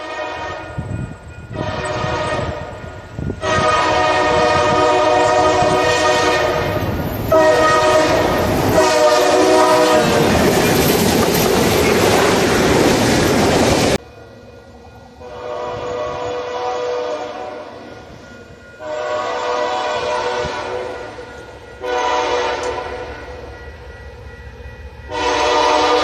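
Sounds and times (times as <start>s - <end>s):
locomotive air horn blasts: 0.0s - 0.9s, 1.5s - 2.8s, 3.4s - 10.3s, 15.2s - 17.8s, 18.8s - 23.2s, 25.1s - 26.0s
train cars and wheels passing: 0.0s - 26.0s.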